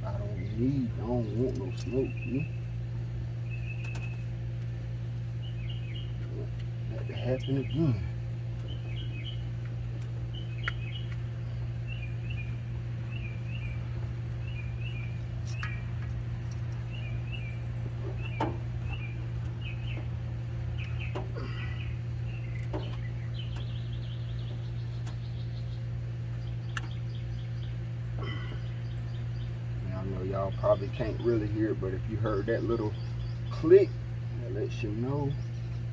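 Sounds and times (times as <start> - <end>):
small birds chirping: 0.0 - 35.9
steady low hum: 0.0 - 35.9.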